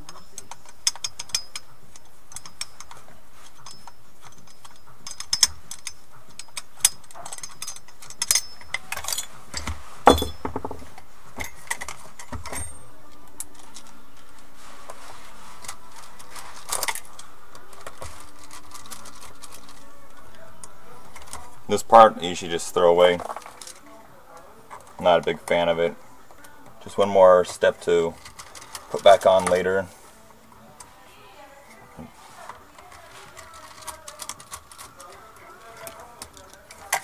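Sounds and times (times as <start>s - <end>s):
clicks and rattles of small parts: 0.0s - 14.4s, 15.6s - 21.5s, 23.0s - 23.9s, 26.4s - 29.8s, 32.4s - 37.0s.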